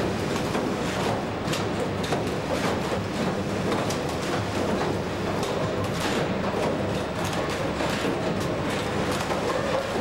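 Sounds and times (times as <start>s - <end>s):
machine hum and hiss: 0.0s - 10.0s.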